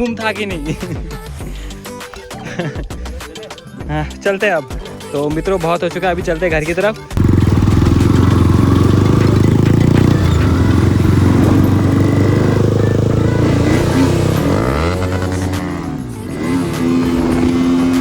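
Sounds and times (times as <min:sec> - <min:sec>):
motorcycle engine running: 0:07.2 - 0:18.0.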